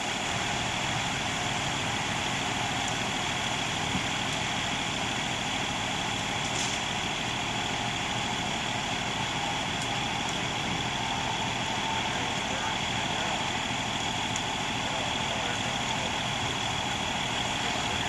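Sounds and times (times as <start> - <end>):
truck engine running: 0.0 - 18.0.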